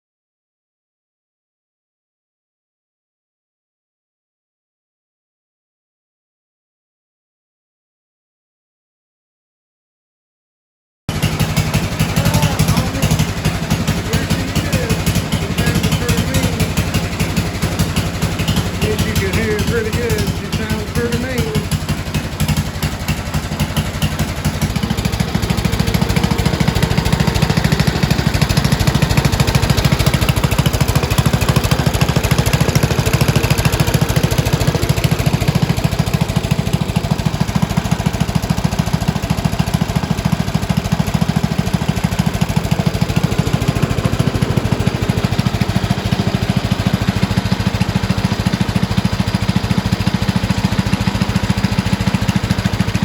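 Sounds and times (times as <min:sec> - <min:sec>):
riding mower engine running: 0:11.1 - 0:53.0.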